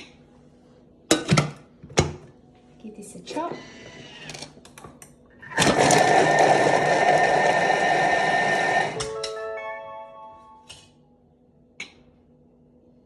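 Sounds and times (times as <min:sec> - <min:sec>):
food processor blades whirring: 0:05.4 - 0:09.1.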